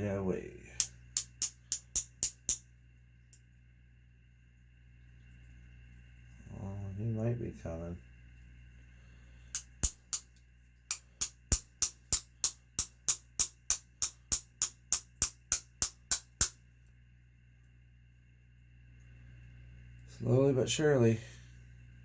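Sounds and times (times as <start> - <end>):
sharp metal taps: 0.8 - 2.6, 9.6 - 16.6.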